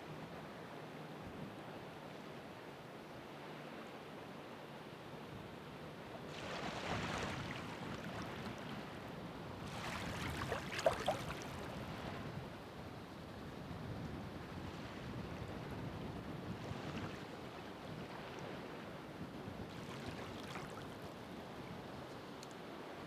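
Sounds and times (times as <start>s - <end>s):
waves breaking on shore: 6.2s - 12.5s, 14.5s - 21.7s.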